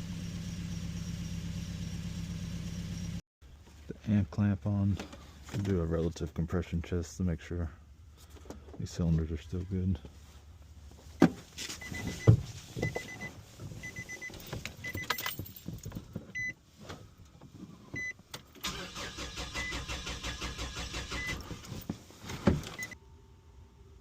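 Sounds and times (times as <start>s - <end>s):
starter cranking engine: 18.6s - 21.6s.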